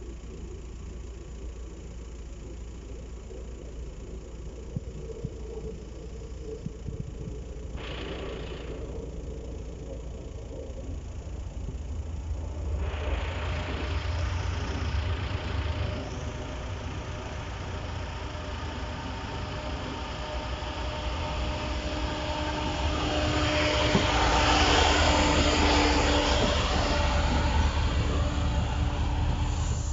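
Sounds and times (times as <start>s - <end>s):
vehicle engine rumbling: 0.0s - 29.9s
wide rushing noise: 12.8s - 29.9s.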